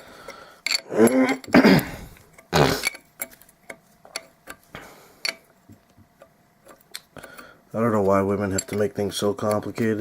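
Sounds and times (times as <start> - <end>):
metal tools clinking: 0.6 - 1.6, 8.3 - 10.0.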